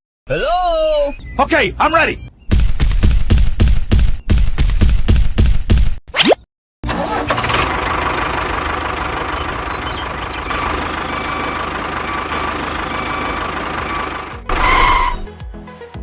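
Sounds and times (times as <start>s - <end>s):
engine running: 6.8s - 15.3s.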